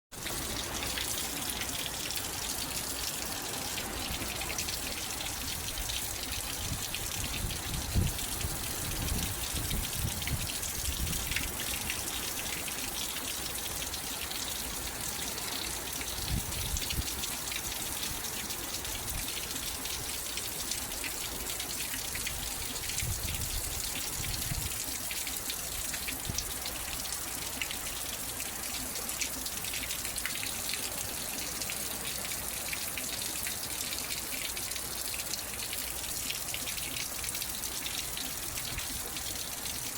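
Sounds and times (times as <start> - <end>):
rain falling: 0.1 - 39.9.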